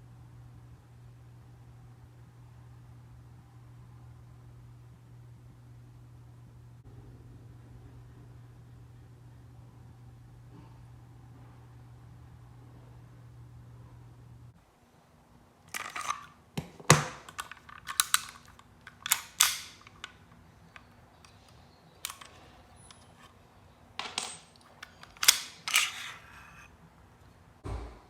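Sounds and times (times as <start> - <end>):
pistol parts clicking and snapping: 15.7 - 23.2, 24.0 - 26.4.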